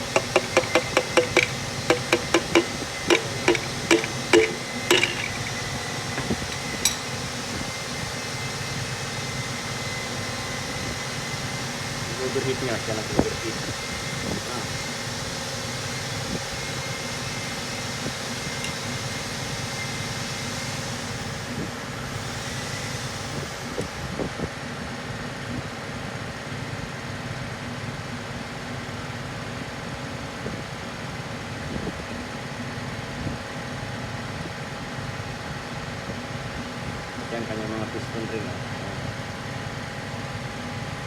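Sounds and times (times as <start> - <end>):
mechanical hum: 0.0 - 41.0.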